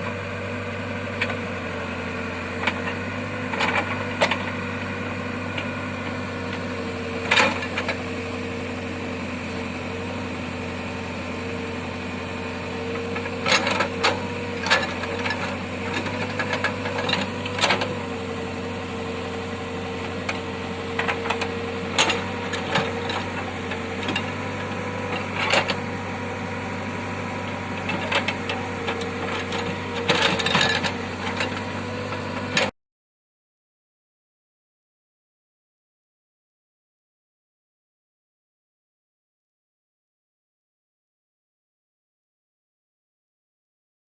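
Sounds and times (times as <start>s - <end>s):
diesel engine running: 0.0s - 32.7s.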